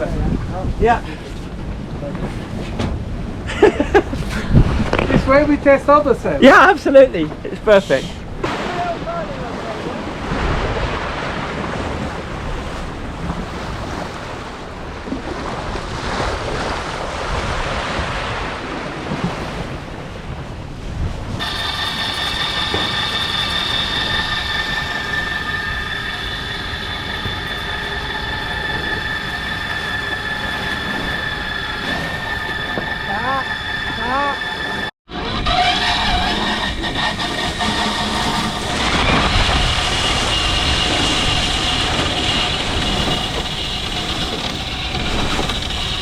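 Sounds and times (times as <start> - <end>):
water rushing past boat: 0.0 - 46.0
wind buffeting microphone: 0.0 - 46.0
mechanical running with whine: 21.4 - 46.0.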